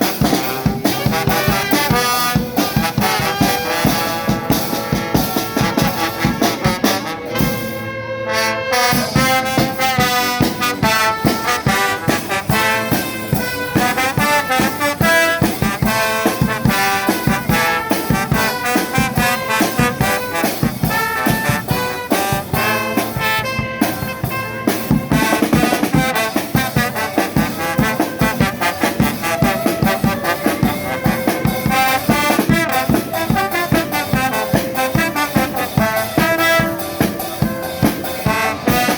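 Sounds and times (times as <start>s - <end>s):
driving drum beat: 0.0s - 7.9s, 8.7s - 38.9s
trumpets and trombones: 0.0s - 38.9s.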